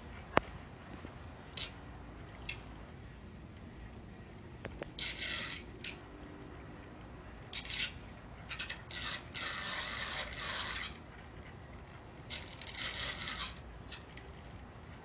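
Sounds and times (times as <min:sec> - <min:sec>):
scraping rattling noise: 0:04.7 - 0:06.1, 0:07.4 - 0:15.0.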